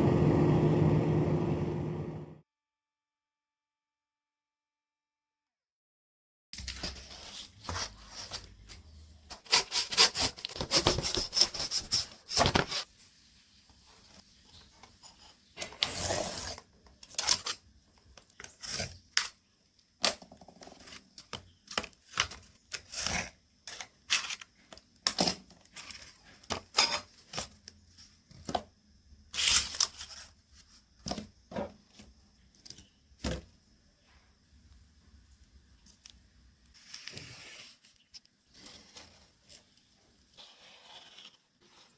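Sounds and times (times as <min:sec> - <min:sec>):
cardboard scraping and rubbing: 0:40.4 - 0:41.9.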